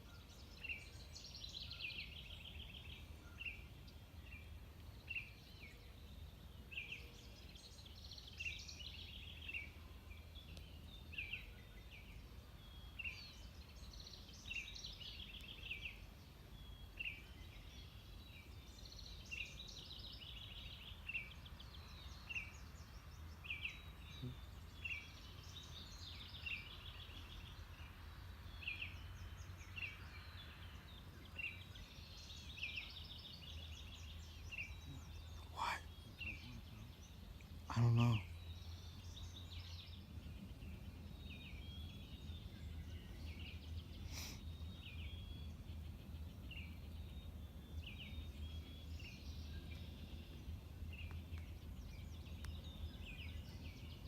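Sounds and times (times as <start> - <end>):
songbirds trilling and chattering: 0.0 - 54.0.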